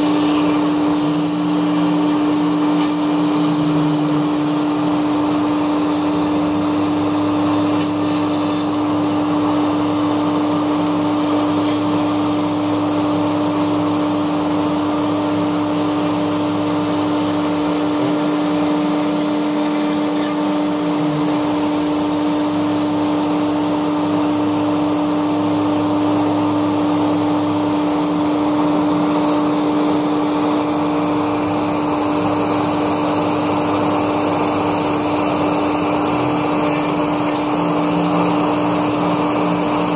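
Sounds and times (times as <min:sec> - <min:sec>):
low hum: 0:00.0 - 0:23.9
router cutting foam: 0:00.0 - 0:39.9
router spindle whine: 0:00.0 - 0:39.9.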